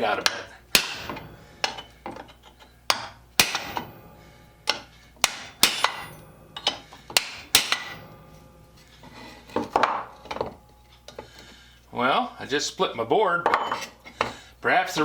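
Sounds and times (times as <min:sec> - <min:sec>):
hammer striking steel rivet: 0:00.2 - 0:08.5.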